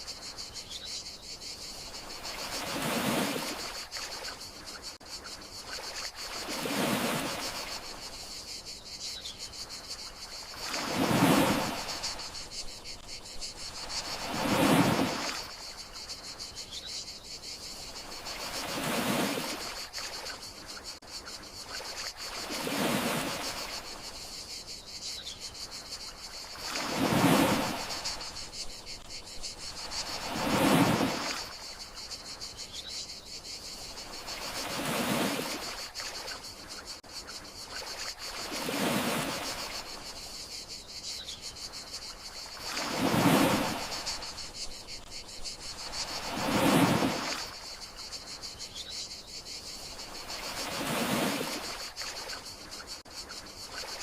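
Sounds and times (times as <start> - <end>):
crickets chirring: 0.0 - 54.0
sea waves washing in: 1.8 - 4.3, 5.7 - 8.1, 10.4 - 15.8, 18.0 - 20.4, 21.8 - 24.1, 26.5 - 32.0, 34.1 - 36.4, 37.8 - 40.2, 42.6 - 47.8, 50.1 - 52.5.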